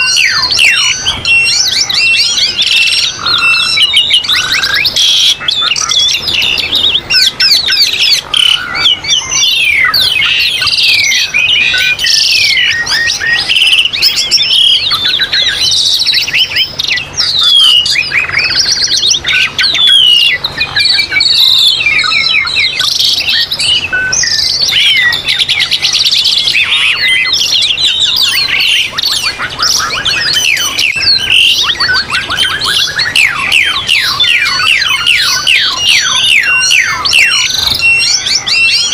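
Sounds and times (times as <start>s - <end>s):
songbirds singing: 0.0s - 38.9s.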